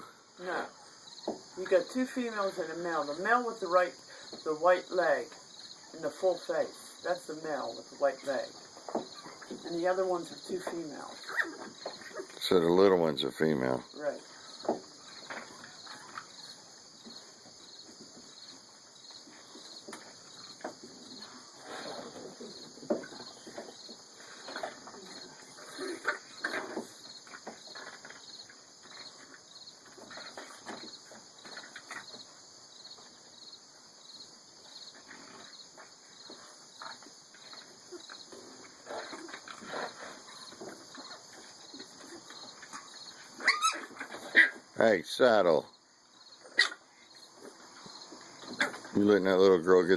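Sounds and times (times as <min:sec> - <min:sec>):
puppies playing and yipping: 0:08.6 - 0:09.6, 0:10.6 - 0:12.5, 0:14.4 - 0:32.4, 0:34.9 - 0:44.8, 0:46.4 - 0:48.9.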